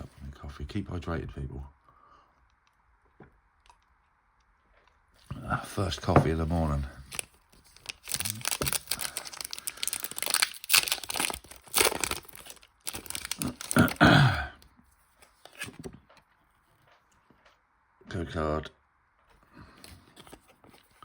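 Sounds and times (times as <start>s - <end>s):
foil wrapper tearing and crinkling: 7.0s - 14.0s.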